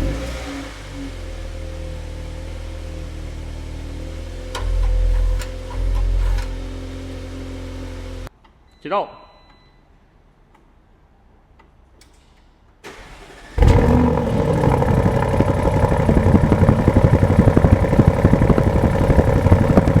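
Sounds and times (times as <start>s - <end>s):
car engine running: 0.0s - 8.3s, 13.0s - 20.0s
engine cranking: 1.3s - 8.2s, 12.9s - 20.0s.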